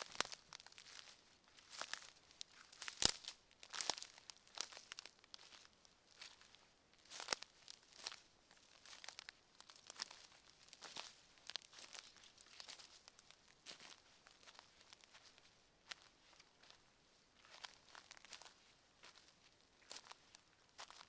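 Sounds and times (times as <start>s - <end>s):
footsteps on forest floor: 0.0s - 2.1s, 2.7s - 5.6s, 8.8s - 16.8s, 17.4s - 19.3s.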